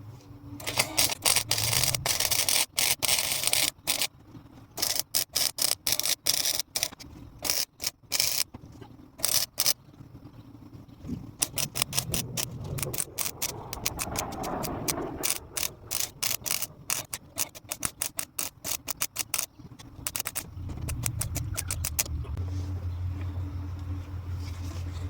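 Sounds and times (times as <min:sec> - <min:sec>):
fast clicks: 0:00.6 - 0:04.1, 0:04.8 - 0:08.5, 0:09.2 - 0:09.8, 0:11.4 - 0:22.4
welder crackling: 0:00.6 - 0:04.1, 0:04.8 - 0:08.5, 0:09.2 - 0:09.8, 0:11.4 - 0:22.4.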